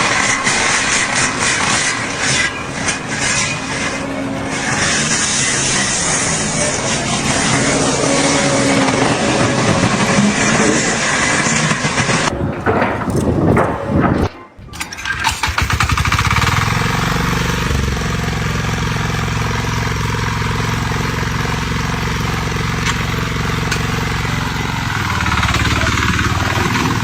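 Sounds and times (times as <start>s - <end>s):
engine running: 0.0s - 27.0s.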